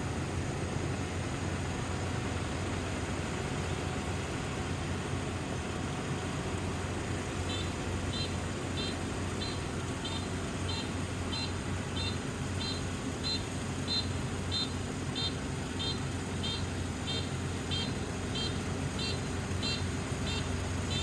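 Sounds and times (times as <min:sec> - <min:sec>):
harvester engine running: 0:00.0 - 0:21.0
short high warning beeps: 0:07.5 - 0:21.0.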